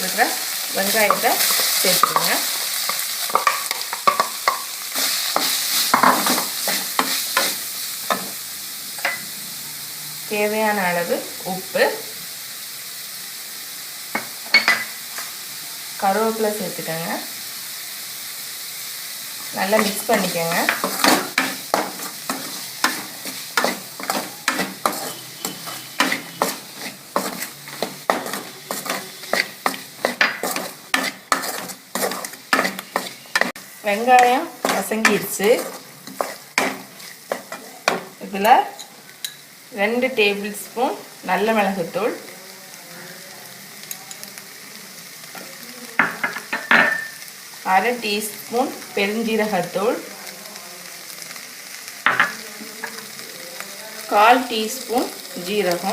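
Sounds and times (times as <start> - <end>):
onions sizzling in hot oil: 0.0 - 55.9
spatula scraping a pan: 19.7 - 38.2.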